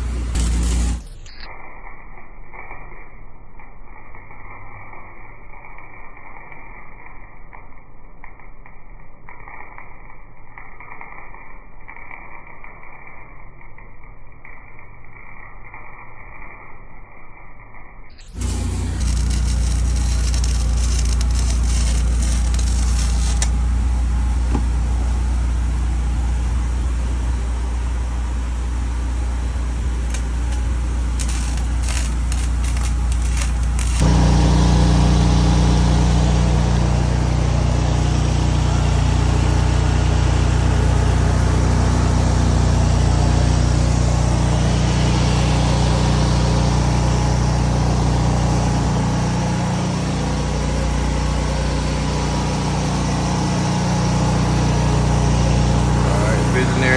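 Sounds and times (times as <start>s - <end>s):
engine humming: 0.0s - 1.4s, 18.3s - 56.9s.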